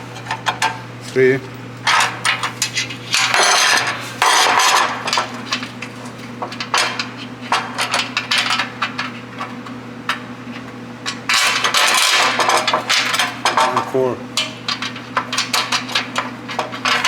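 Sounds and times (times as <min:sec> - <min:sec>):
metal bolts clinking and scraping: 0:01.8 - 0:09.5.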